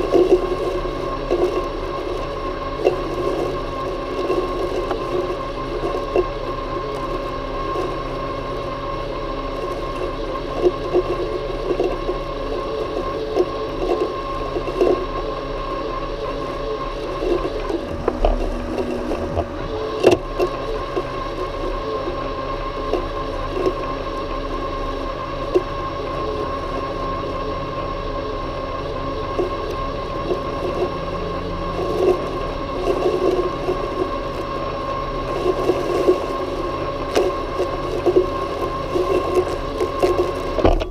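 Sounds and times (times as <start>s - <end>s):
robotic lawnmower motor whine: 0.0s - 40.9s.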